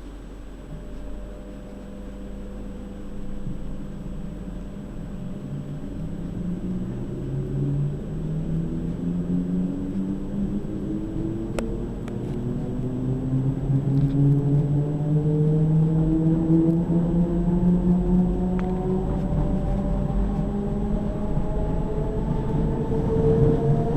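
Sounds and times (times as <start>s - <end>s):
electric train motors whining: 0.0s - 23.9s.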